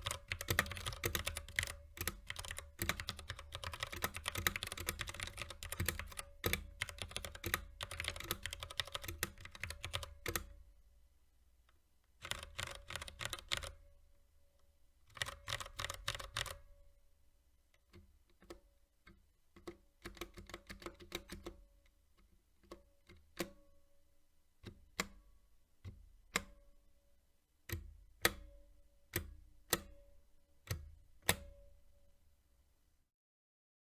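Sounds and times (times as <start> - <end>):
mechanical keyboard typing: 0.0 - 10.6, 12.2 - 13.8, 15.1 - 16.8, 19.6 - 21.6.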